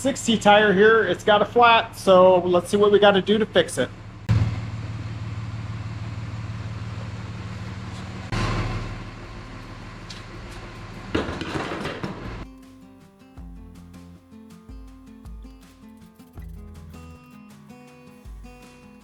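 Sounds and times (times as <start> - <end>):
machine pulsing hum: 4.0 - 11.4
background music: 12.1 - 19.0.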